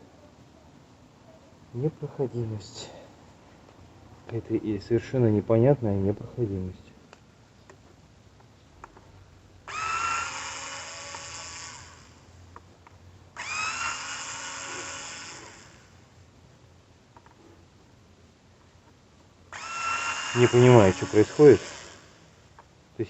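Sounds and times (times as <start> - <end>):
small electric motor whirring: 9.7 - 12.3, 13.4 - 16.0, 19.5 - 22.4.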